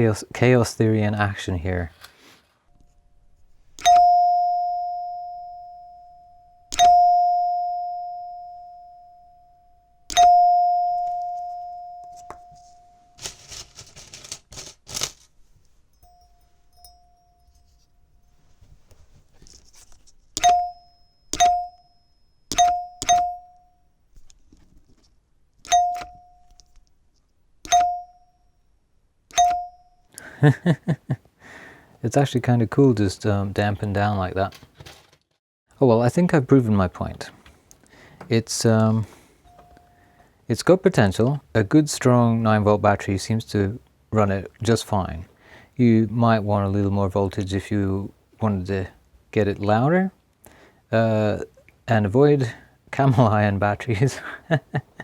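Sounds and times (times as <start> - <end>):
door chime tone bar strikes: 3.8 - 13.2, 20.4 - 23.8, 25.7 - 26.6, 27.7 - 28.4, 29.3 - 30.0
handling noise: 10.0 - 28.2.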